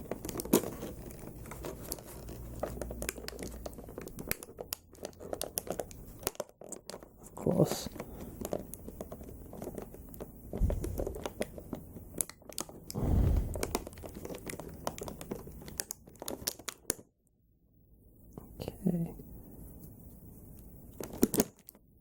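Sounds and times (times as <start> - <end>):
plastic packaging crinkling: 0.0 - 7.1, 8.4 - 12.8, 13.4 - 16.9, 21.0 - 21.8.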